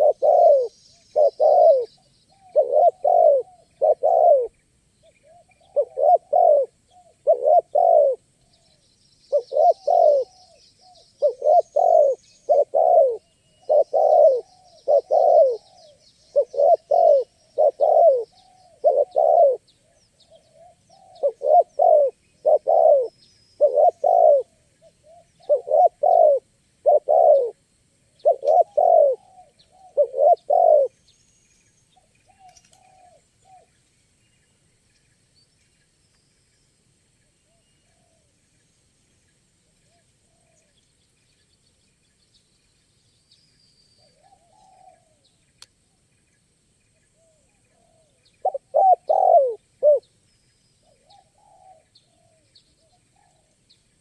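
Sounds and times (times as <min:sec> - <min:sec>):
dove cooing: 0:00.0 - 0:04.5, 0:05.2 - 0:08.2, 0:09.3 - 0:19.7, 0:20.3 - 0:27.6, 0:28.2 - 0:30.9, 0:32.3 - 0:33.7, 0:44.1 - 0:45.2, 0:47.2 - 0:50.1, 0:50.9 - 0:53.5
small birds chirping: 0:00.0 - 0:54.0.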